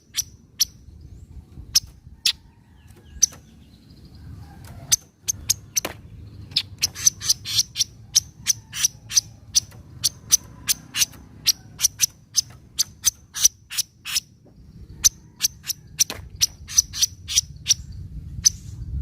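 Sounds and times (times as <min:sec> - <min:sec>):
bird chattering call: 0:04.8 - 0:14.3, 0:15.0 - 0:17.8.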